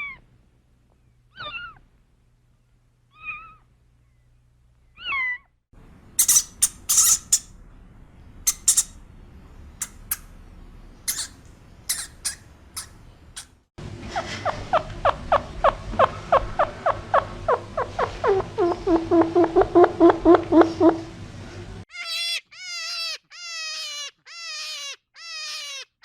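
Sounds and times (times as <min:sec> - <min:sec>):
rodent squeaking: 0:06.2 - 0:07.5, 0:08.5 - 0:09.0, 0:09.8 - 0:10.3, 0:11.1 - 0:13.6, 0:21.9 - 0:25.9.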